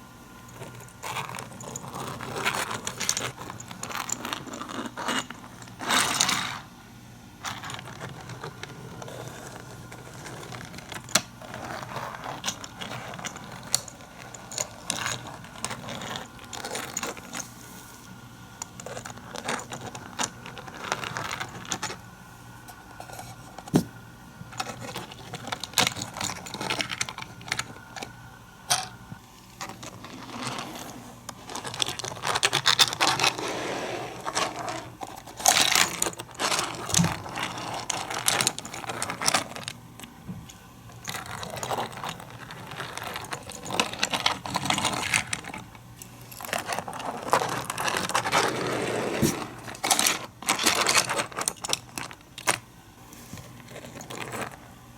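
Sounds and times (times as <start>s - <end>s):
toy cars rattling along track: 29.7s - 39.8s, 46.4s - 52.6s.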